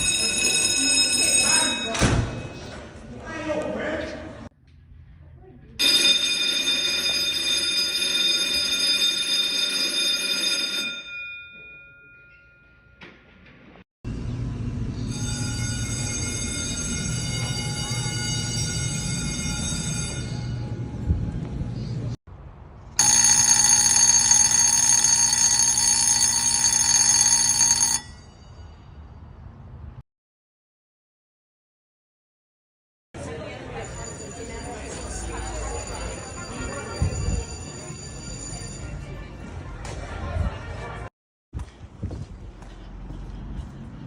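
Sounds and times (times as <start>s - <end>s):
electric bell ringing: 0.0s - 2.0s, 5.8s - 13.0s, 15.0s - 20.8s, 23.0s - 29.0s, 33.8s - 39.0s.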